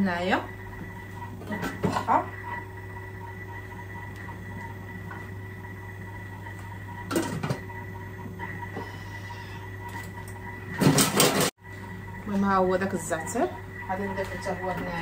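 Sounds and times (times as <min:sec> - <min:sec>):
steady electrical hum: 0:00.0 - 0:15.0
kitchen clatter: 0:10.8 - 0:11.5.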